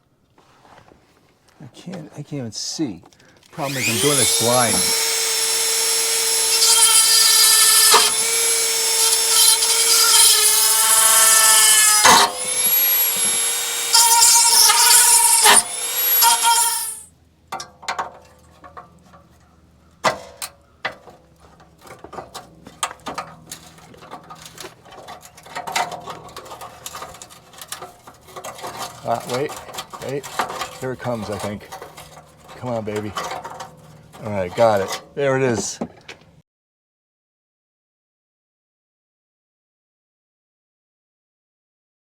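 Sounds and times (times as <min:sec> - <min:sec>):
power tool whining: 0:03.5 - 0:17.0
metal clicks and knocks: 0:20.0 - 0:34.2.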